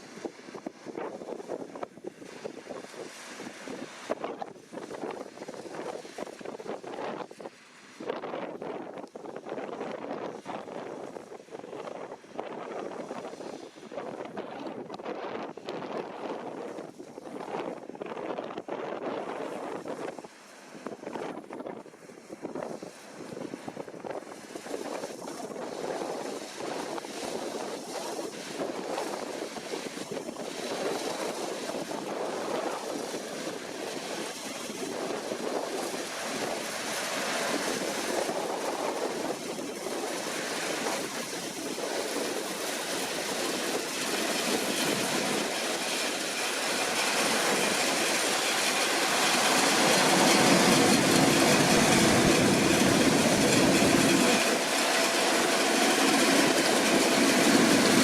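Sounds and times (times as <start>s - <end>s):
combine harvester running: 22.8s - 58.0s
steady hum: 24.2s - 58.0s.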